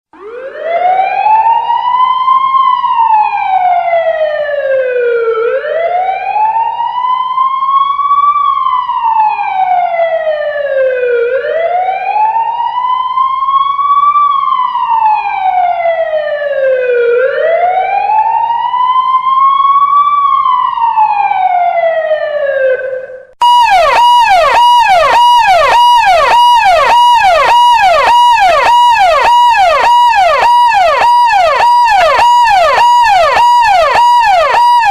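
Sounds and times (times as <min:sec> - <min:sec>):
siren wailing: 0:00.2 - 0:34.9
fast electronic siren yelp: 0:23.4 - 0:34.9.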